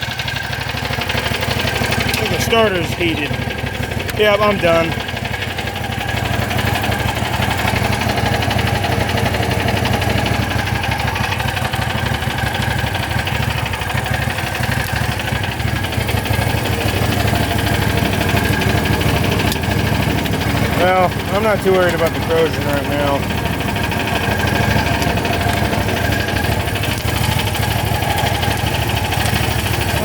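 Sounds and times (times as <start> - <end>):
small engine idling: 0.0 - 30.0.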